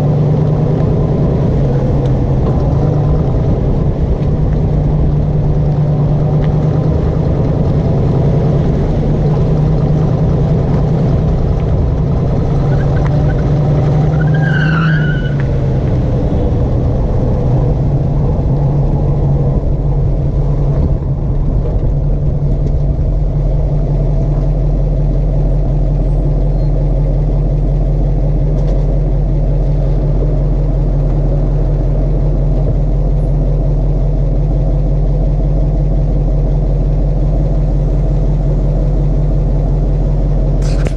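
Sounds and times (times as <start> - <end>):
car engine running: 0.0 - 40.9
brief tyre squeal: 14.1 - 15.4, 26.0 - 26.8.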